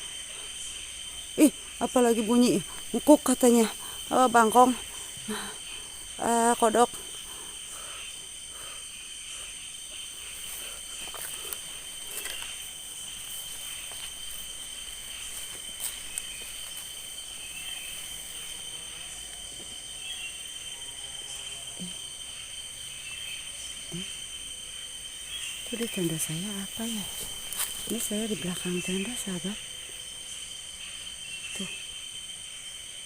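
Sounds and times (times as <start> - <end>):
crickets trilling: 0.0 - 33.0
faint frog croaks: 23.2 - 30.1, 30.8 - 32.2.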